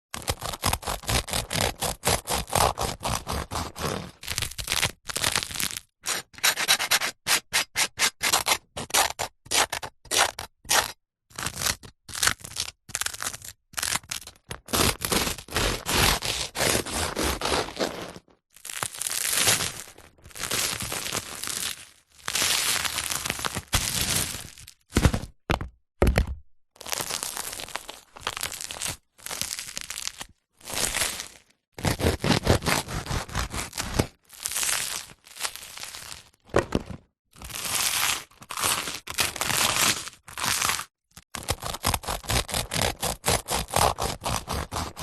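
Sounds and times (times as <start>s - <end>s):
knife sawing through crusty bread: 0.2s - 4.4s, 6.0s - 11.0s, 14.7s - 18.2s, 31.8s - 34.1s, 41.4s - 45.0s.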